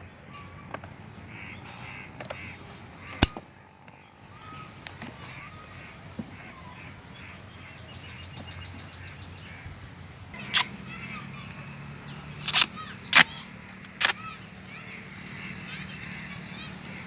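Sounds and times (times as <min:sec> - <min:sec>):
sharp clicks: 0:12.5 - 0:14.2.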